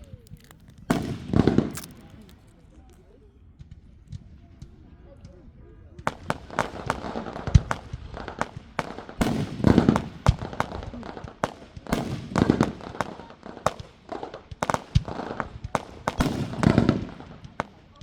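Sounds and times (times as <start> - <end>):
fireworks bangs and pops: 0.0 - 5.4, 6.0 - 18.0
deep firework booms: 0.3 - 2.4, 6.1 - 17.9.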